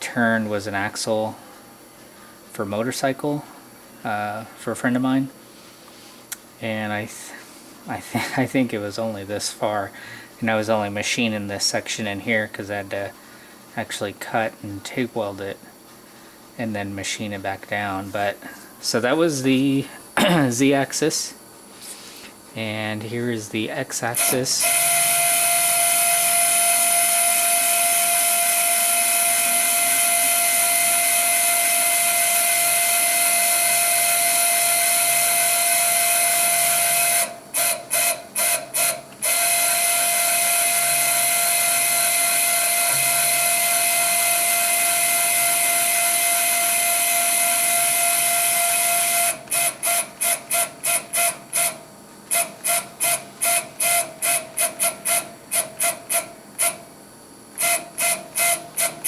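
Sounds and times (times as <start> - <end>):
stepper motor whine: 24.1 - 56.8.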